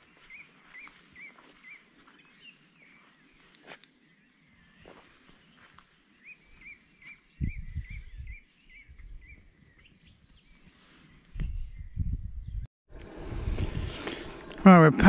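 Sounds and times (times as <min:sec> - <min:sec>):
bird calling: 0:00.0 - 0:11.3
wind buffeting microphone: 0:07.3 - 0:10.6, 0:11.3 - 0:14.6.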